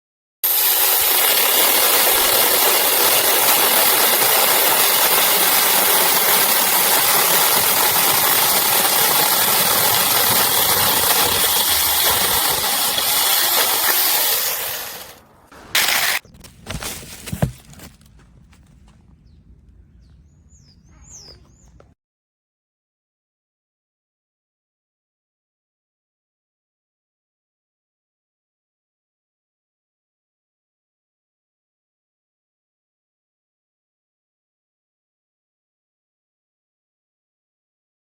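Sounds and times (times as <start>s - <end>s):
electric chainsaw running: 0.4s - 16.2s.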